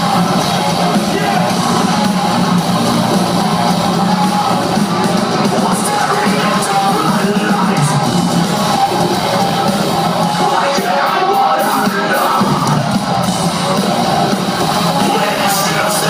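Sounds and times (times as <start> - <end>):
heavy metal band playing live: 0.0 - 16.0.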